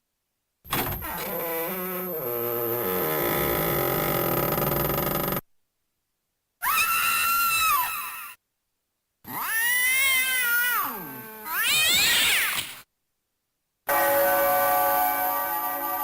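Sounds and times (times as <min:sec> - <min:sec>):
toy cat meowing: 0:06.6 - 0:08.4, 0:09.3 - 0:12.8.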